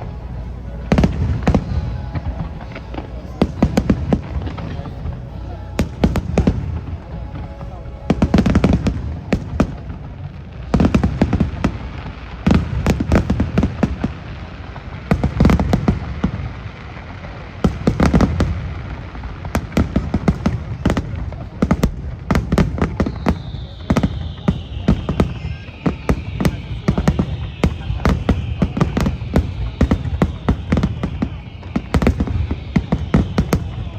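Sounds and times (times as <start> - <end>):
descending whistle: 0.0 - 12.1, 22.8 - 33.9
low rumble: 0.0 - 14.4
fireworks bursting with bangs: 0.0 - 33.9.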